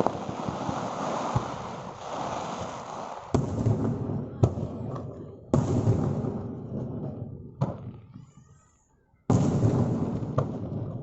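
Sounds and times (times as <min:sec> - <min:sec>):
sharp firework crack: 0:00.0 - 0:04.1
firework shells booming: 0:00.0 - 0:08.2, 0:09.3 - 0:11.0.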